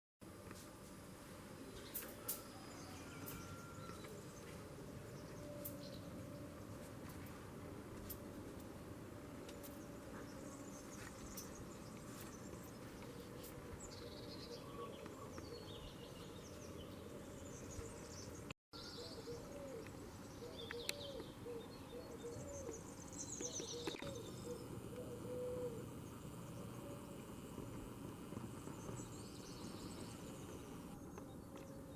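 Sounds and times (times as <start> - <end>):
small birds chirping: 9.4 - 31.9
dove cooing: 13.1 - 17.3, 19.0 - 22.8, 23.4 - 27.9.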